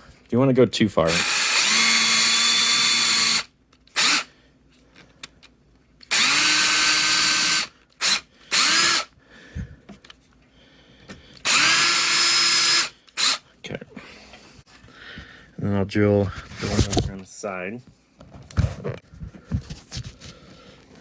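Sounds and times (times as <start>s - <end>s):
power drill whining: 1.1s - 4.3s, 6.1s - 9.1s, 11.4s - 13.4s.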